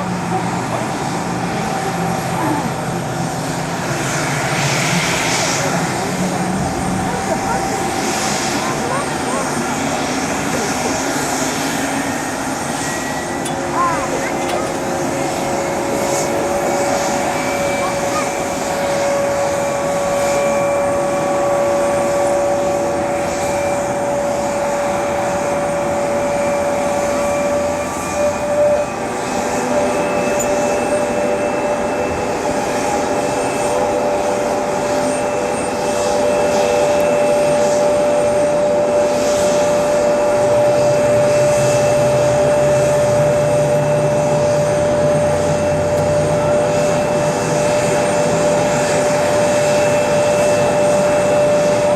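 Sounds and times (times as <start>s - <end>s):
jet engine whine: 0.0s - 51.9s.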